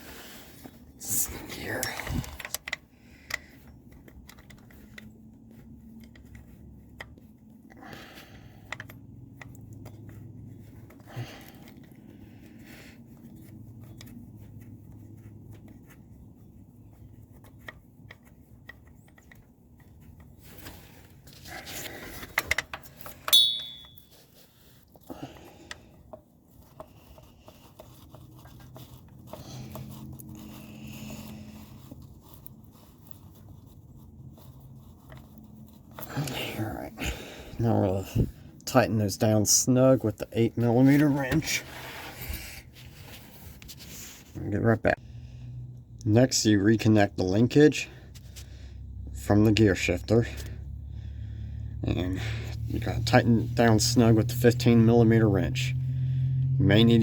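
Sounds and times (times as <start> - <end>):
parts rustling and clicking: 1.6 - 7.8, 8.6 - 36.4
sharp metallic clink: 23.3 - 24.1.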